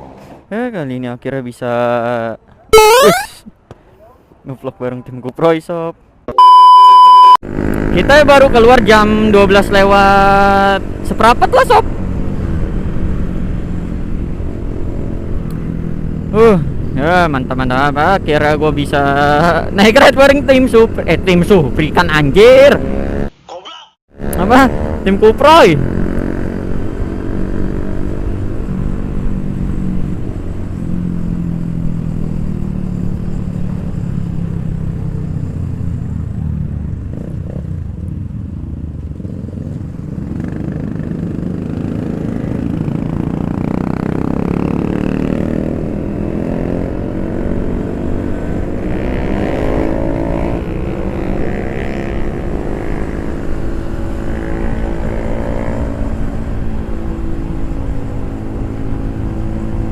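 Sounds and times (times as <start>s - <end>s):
motorcycle engines accelerating: 7.4s - 23.3s, 24.1s - 59.9s.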